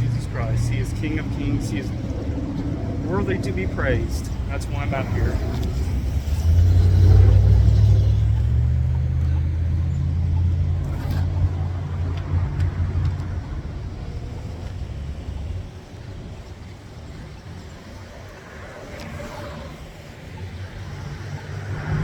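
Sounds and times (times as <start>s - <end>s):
vehicle engine passing by: 0.0s - 14.7s, 20.6s - 22.0s.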